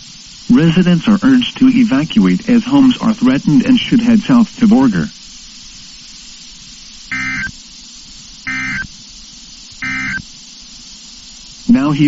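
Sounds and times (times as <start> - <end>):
radio hiss: 0.0 - 12.0
warbling digital data tones: 7.1 - 7.6, 8.5 - 8.9, 9.8 - 10.2.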